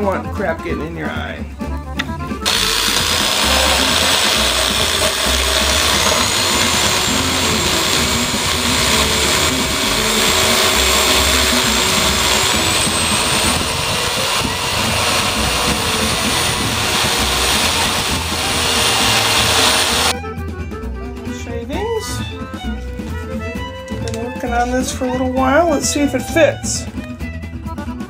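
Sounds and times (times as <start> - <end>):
drill grinding stone on metal: 2.4 - 20.2.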